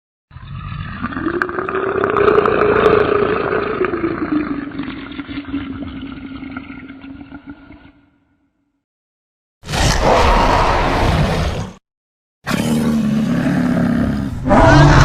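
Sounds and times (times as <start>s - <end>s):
monster roar: 9.6s - 11.8s, 12.5s - 15.0s.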